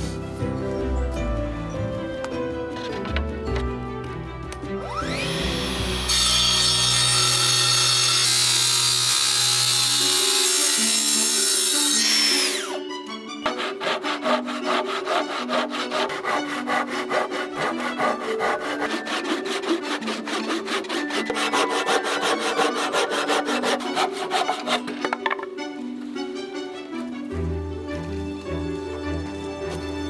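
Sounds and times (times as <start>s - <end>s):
background music: 0.0s - 30.0s
power tool noise: 4.8s - 25.4s
hand saw cutting wood: 4.8s - 25.6s.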